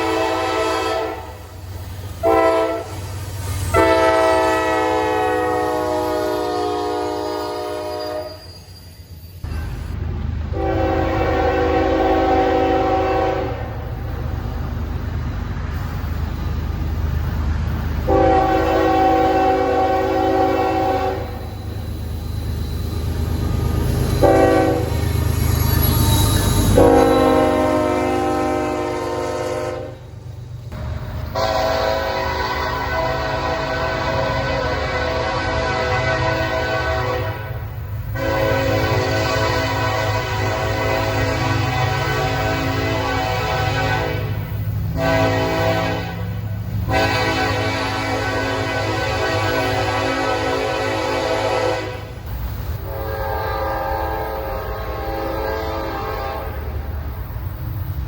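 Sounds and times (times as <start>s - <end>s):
locomotive air horn: 0.0s - 1.6s, 2.2s - 8.5s, 10.5s - 13.9s, 18.1s - 21.5s, 24.1s - 25.1s, 26.0s - 30.0s, 31.2s - 56.9s
low rumble of passing train: 0.0s - 58.0s.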